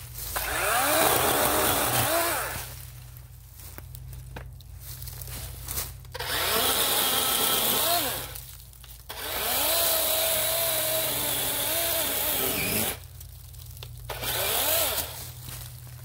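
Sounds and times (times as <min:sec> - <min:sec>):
electric chainsaw cutting vines: 0:00.3 - 0:02.8, 0:06.1 - 0:13.1, 0:14.1 - 0:15.4.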